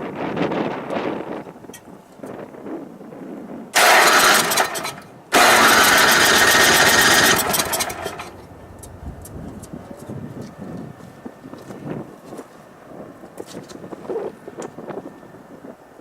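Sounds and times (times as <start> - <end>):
snowblower engine starting: 3.8 - 11.8.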